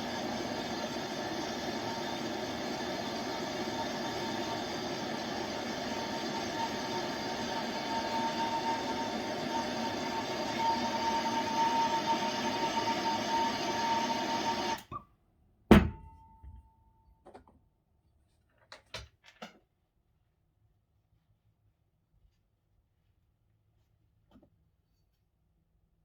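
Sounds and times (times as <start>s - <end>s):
blowtorch flame hissing: 0.0s - 14.8s.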